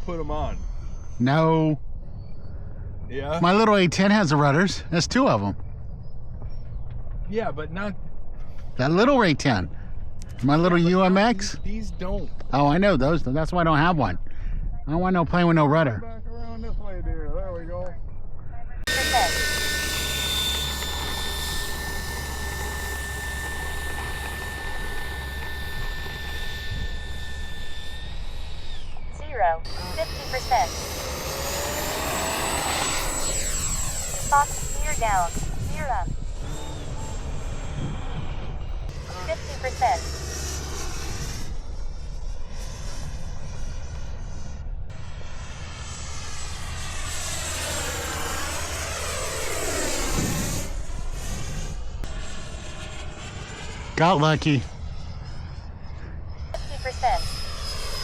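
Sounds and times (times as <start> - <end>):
rc jet whining in flight: 0.0 - 58.0
wind rumbling on microphone: 5.2 - 19.3, 20.1 - 54.0
wind on microphone: 20.8 - 40.0, 49.8 - 52.2.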